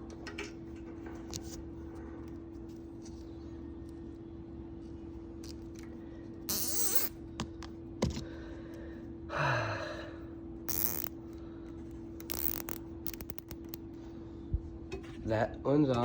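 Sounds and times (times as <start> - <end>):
steady low hum: 0.0 - 16.0
rustling and scraping: 0.6 - 4.1
zip tie ratchet clicks: 10.7 - 11.2, 12.2 - 13.8.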